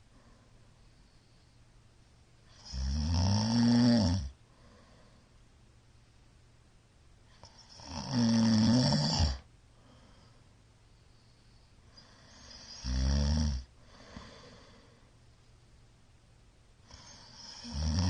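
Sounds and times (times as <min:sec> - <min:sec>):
faint breathing: 0:00.0 - 0:01.9, 0:04.4 - 0:05.5, 0:09.7 - 0:12.8, 0:13.7 - 0:15.5
man snoring loudly: 0:02.5 - 0:04.3, 0:07.6 - 0:09.4, 0:12.4 - 0:13.7, 0:16.9 - 0:18.0.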